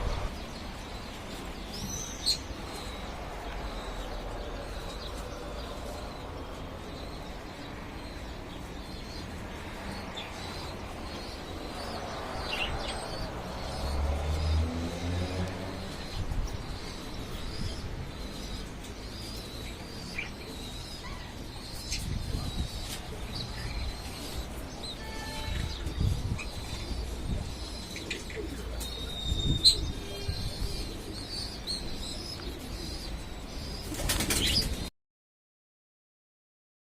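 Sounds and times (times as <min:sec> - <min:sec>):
low rumble of wind: 0:00.0 - 0:24.8, 0:25.4 - 0:33.8
wind rumbling on microphone: 0:12.0 - 0:18.3, 0:21.9 - 0:24.0, 0:25.5 - 0:27.8, 0:29.0 - 0:31.1
pigeons' wings flapping: 0:33.9 - 0:34.9.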